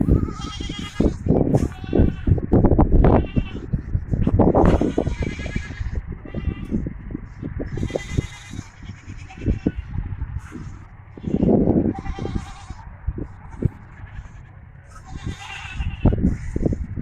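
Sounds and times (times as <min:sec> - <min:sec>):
goat kids bleating: 0:00.0 - 0:17.0.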